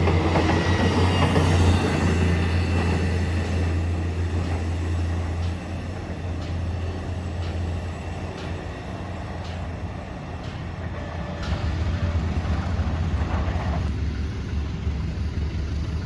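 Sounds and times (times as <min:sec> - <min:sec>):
train rumbling on rails: 0:00.0 - 0:16.0
light rail clicks: 0:02.4 - 0:13.9.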